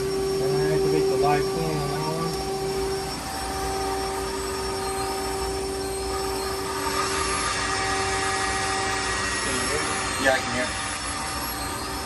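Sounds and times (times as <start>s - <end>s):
machine whine with low hum: 0.0s - 12.0s.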